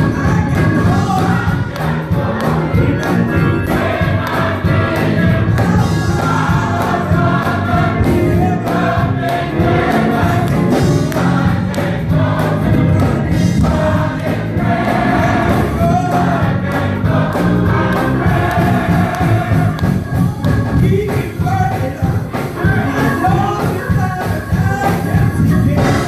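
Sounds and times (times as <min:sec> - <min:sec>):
gospel choir singing: 0:00.0 - 0:26.0
instruments keeping steady beat: 0:00.0 - 0:26.0.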